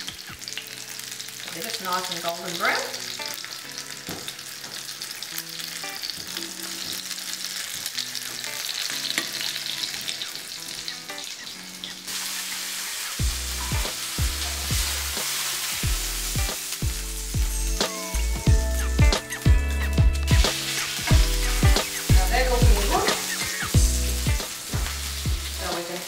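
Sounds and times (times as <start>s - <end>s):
fish frying in oil: 0.0s - 19.6s, 20.2s - 26.0s
background music: 0.0s - 26.0s
heavy bass beat: 13.2s - 15.0s, 15.8s - 25.5s.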